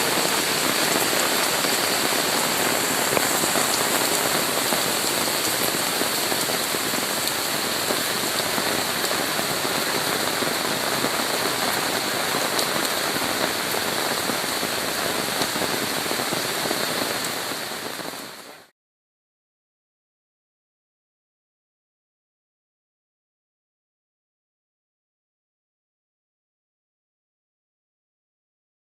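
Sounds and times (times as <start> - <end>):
heavy rain falling: 0.0 - 18.7.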